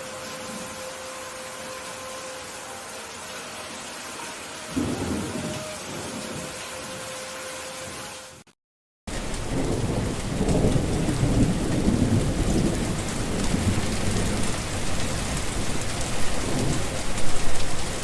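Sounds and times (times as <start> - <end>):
heavy rain: 0.0 - 8.5, 9.1 - 18.0
low rumble of thunder: 4.7 - 6.6, 9.1 - 18.0.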